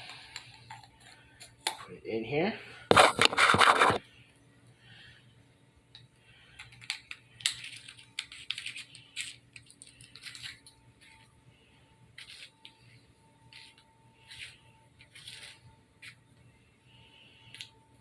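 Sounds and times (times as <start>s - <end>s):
batteries scraping in plastic holder: 2.9s - 4.0s, 13.5s - 16.2s.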